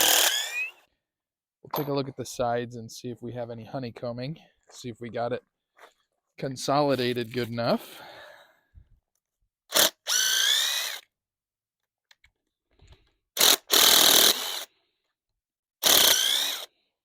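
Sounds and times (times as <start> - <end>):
power drill motor whine: 0.0 - 0.8, 9.7 - 11.1, 15.8 - 16.7.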